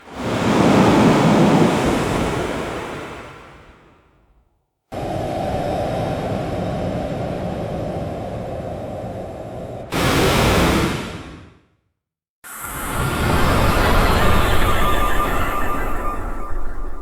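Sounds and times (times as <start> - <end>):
subway train rushing: 12.5 - 17.0.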